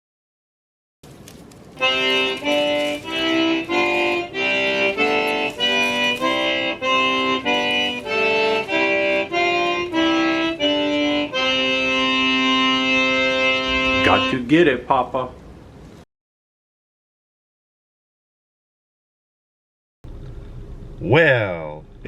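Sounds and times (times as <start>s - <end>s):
lively accordion tune: 1.8s - 14.5s.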